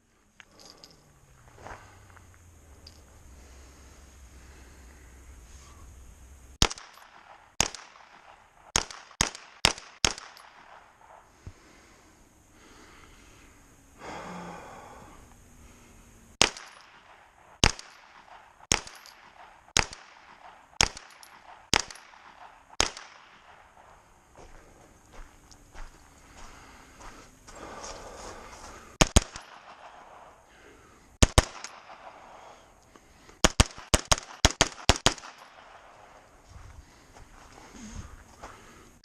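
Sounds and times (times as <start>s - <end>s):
pistol gunshots: 6.6s - 11.2s, 16.4s - 24.0s, 29.0s - 30.4s, 31.2s - 32.5s, 33.4s - 36.3s.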